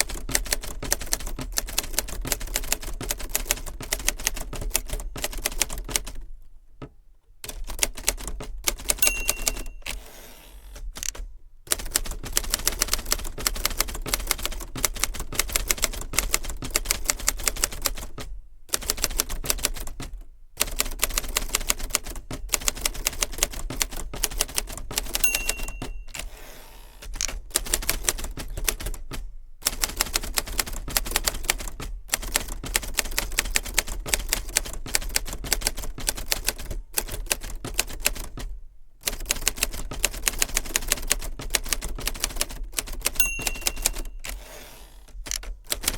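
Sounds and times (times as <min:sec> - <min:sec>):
manual typewriter typing: 0:00.0 - 0:06.3, 0:07.4 - 0:10.1, 0:10.7 - 0:26.4, 0:27.0 - 0:45.9
typewriter margin bell ring: 0:09.0 - 0:10.1, 0:25.1 - 0:26.5, 0:43.1 - 0:44.8.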